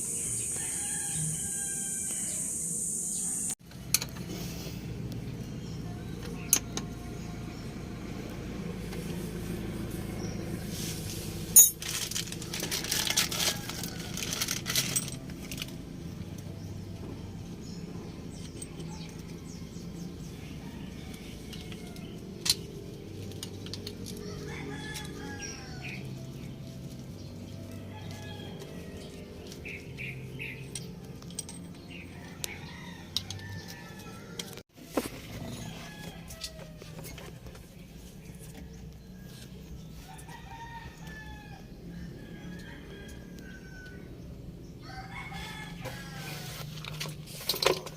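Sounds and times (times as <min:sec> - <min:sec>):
birds chirping: 0:00.0 - 0:03.6, 0:16.0 - 0:34.6
metal tools clinking: 0:11.5 - 0:15.8, 0:29.3 - 0:32.2.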